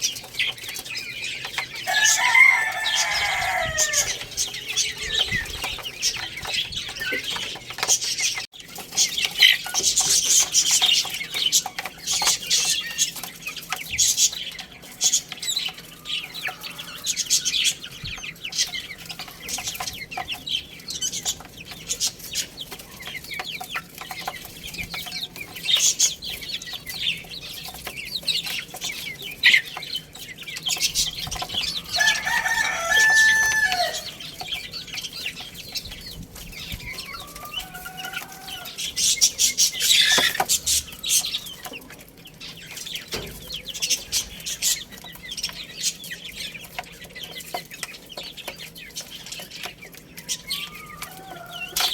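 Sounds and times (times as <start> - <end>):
chickens clucking: 0.0 - 51.9
chicks peeping: 0.0 - 51.9
rooster crowing: 1.8 - 5.7, 31.7 - 34.4, 37.0 - 38.9, 50.5 - 51.9.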